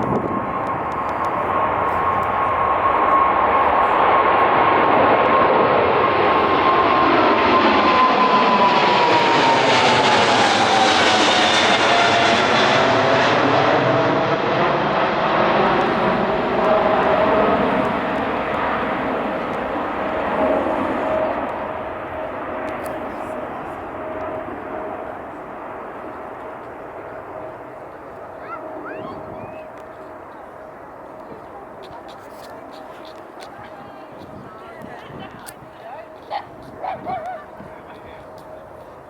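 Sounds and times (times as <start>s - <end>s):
jet airliner flying past: 0.0s - 39.0s.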